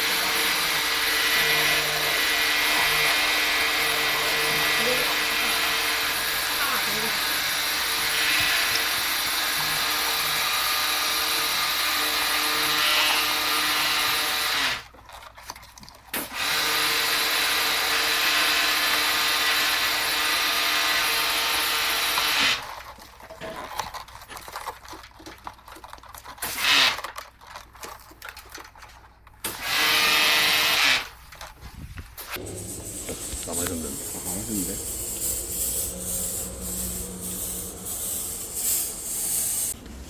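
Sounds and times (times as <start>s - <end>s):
power tool motor running: 0.0s - 14.7s, 29.6s - 31.0s, 32.4s - 40.0s.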